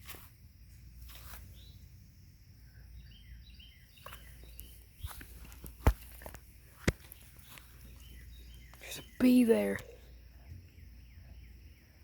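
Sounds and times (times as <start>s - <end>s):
bird chirps: 1.4s - 2.0s, 2.6s - 5.4s, 7.0s - 12.0s.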